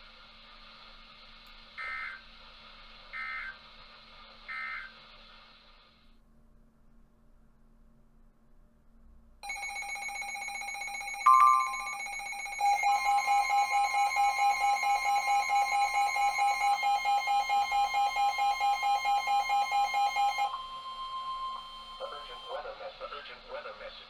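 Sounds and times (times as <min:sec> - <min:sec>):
rapid alarm beeps: 0:09.4 - 0:22.8
two-tone blip: 0:11.3 - 0:12.1
steady high electronic tone: 0:11.3 - 0:22.4.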